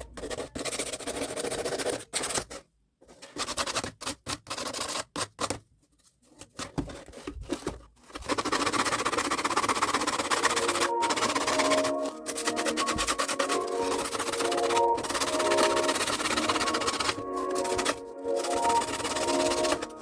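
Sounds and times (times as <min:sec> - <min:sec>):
scraping and rubbing: 0:06.0 - 0:20.0
fast rasping: 0:08.2 - 0:20.0.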